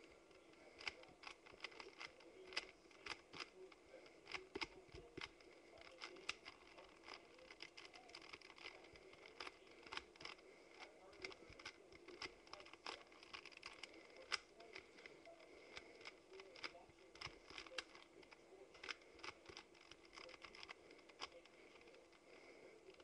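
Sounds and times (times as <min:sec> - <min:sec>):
plastic cube twisting clicks: 0:04.3 - 0:14.8, 0:15.7 - 0:21.9.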